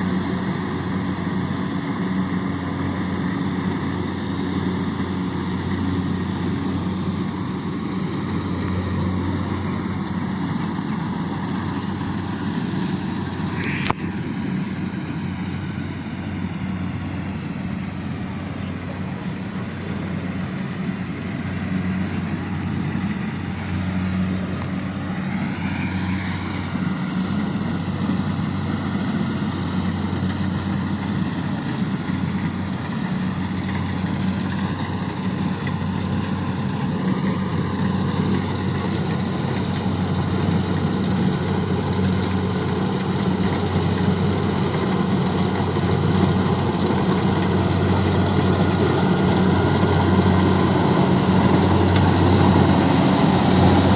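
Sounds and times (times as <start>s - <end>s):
engine humming: 0.0s - 53.9s.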